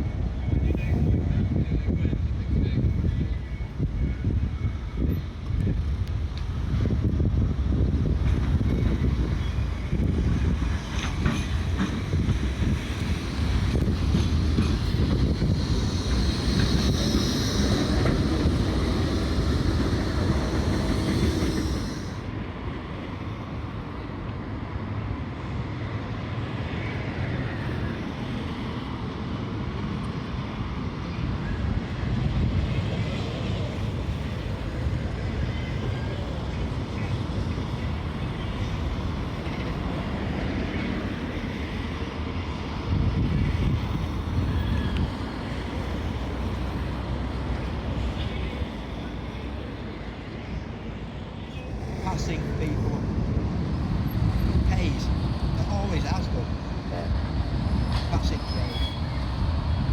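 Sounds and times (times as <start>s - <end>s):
wind on microphone: 0.0s - 22.4s, 31.4s - 46.4s, 51.6s - 59.9s
tram rumbling on track: 0.0s - 59.9s.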